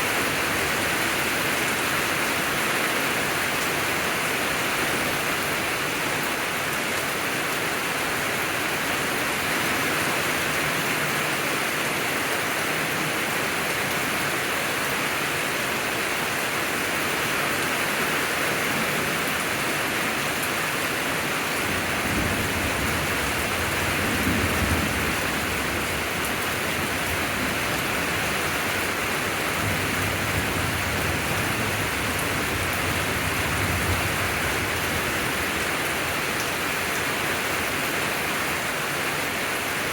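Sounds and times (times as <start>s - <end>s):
steady rain falling: 0.0s - 39.9s
thunder rumbling: 21.8s - 35.6s.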